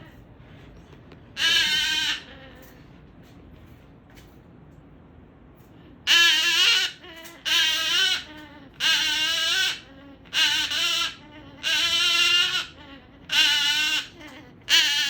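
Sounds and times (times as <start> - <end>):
cockatoo whining calls: 1.4 - 2.9, 6.0 - 15.0.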